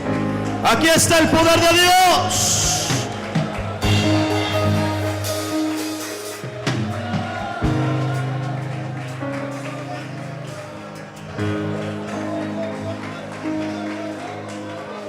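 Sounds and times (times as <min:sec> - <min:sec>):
band playing worship music: 0:00.0 - 0:15.0
drum hits: 0:02.5 - 0:09.4.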